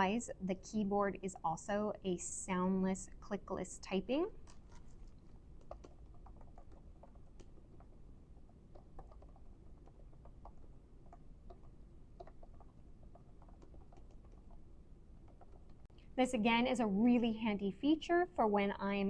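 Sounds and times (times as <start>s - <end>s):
soft keyboard typing: 4.2s - 15.9s.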